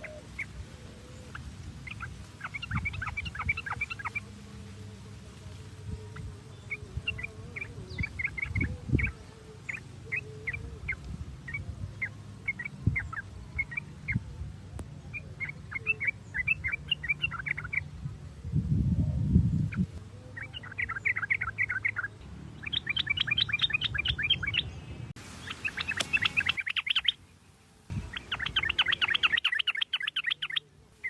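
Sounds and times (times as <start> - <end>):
bird chattering calls: 0.0 - 4.3, 6.2 - 14.3, 15.1 - 17.9, 19.7 - 24.7, 25.4 - 27.2, 27.9 - 30.7
steady low rumble: 0.0 - 26.5, 27.3 - 29.3.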